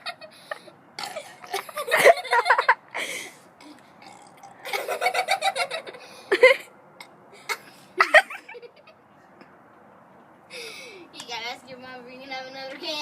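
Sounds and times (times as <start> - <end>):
children laughing: 0.0 - 3.2, 4.6 - 6.7, 7.4 - 9.0.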